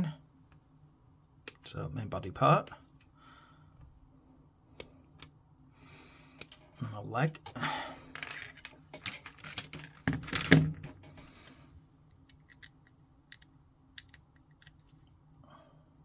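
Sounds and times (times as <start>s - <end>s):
plastic parts clicking and rustling: 7.4s - 11.2s, 12.1s - 15.1s.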